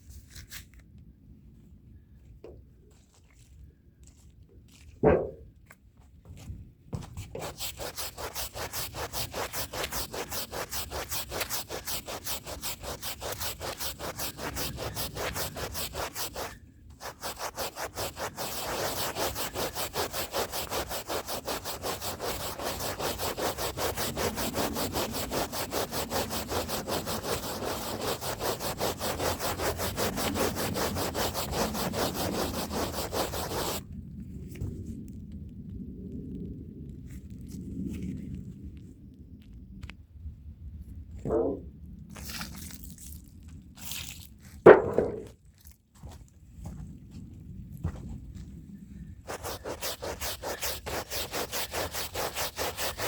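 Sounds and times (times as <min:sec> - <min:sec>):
hand brush scrubbing rug: 0:07.0 - 0:33.8, 0:49.3 - 0:53.0.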